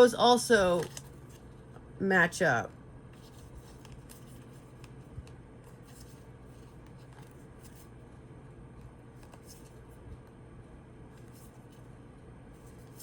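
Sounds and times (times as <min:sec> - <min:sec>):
low room hum: 0:00.0 - 0:13.0
cards rustling and clicking: 0:00.6 - 0:01.8, 0:03.1 - 0:08.0, 0:08.8 - 0:10.2.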